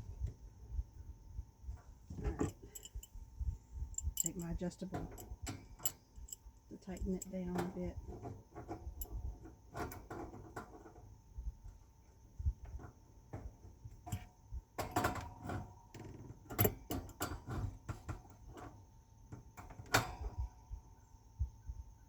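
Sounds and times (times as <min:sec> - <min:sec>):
wrench clinking on hose fitting: 0:02.2 - 0:03.2, 0:03.9 - 0:07.4.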